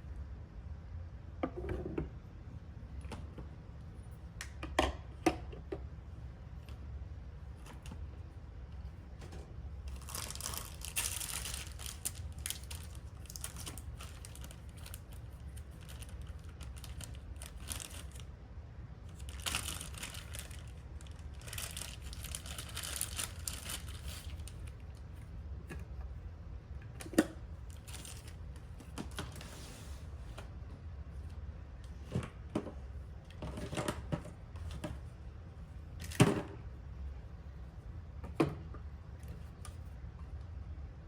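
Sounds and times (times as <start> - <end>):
steady low hum: 0.0 - 41.0
rustling and crinkling: 9.1 - 18.4, 19.0 - 25.3, 27.6 - 30.5.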